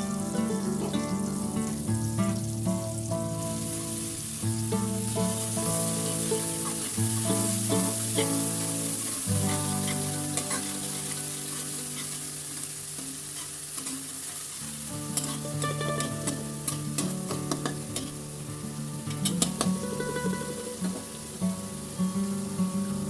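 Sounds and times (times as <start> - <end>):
leaves sizzling in a pan: 0.0 - 23.0
spatula scraping a pan: 6.0 - 18.2.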